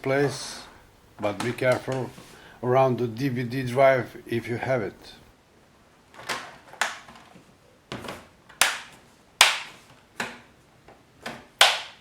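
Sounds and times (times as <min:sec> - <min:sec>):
plastic clips snapping into place: 0:06.2 - 0:07.2, 0:08.5 - 0:10.5.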